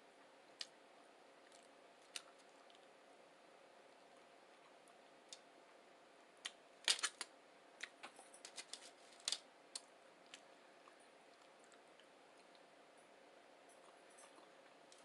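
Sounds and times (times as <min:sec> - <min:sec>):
chewing clicks and crackles: 0:01.4 - 0:02.9, 0:06.4 - 0:12.7.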